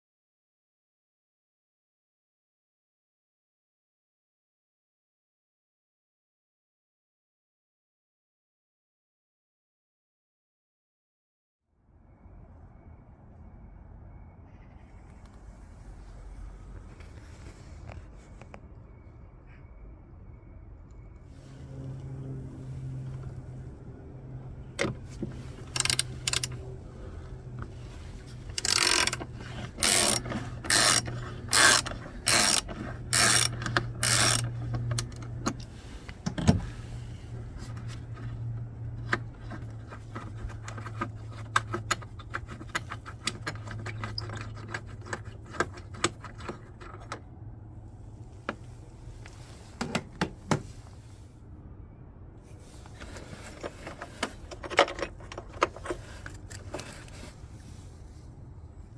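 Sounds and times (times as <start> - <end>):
ratchet wrench clicking: 25.6 - 26.6, 28.5 - 35.6.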